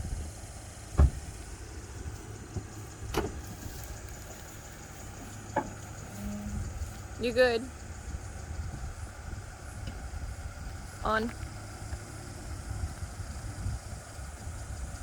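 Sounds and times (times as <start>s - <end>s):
car engine idling: 0.0s - 15.0s
sharp knocks: 1.0s - 1.2s.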